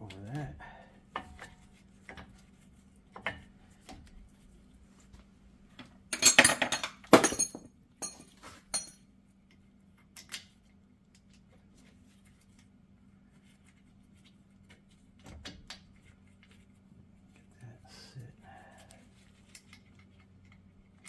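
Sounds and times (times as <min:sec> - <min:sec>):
metal brake parts clinking: 0:06.2 - 0:09.0.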